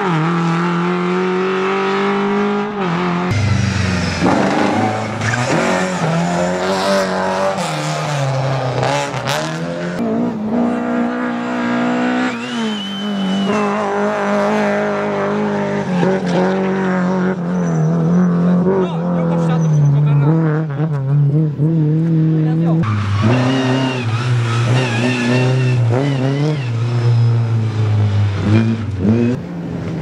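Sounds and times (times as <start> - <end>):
rally car engine revving: 0.0 - 30.0
tyre squeal: 12.2 - 14.1, 17.4 - 18.5, 19.4 - 20.2, 22.8 - 27.5.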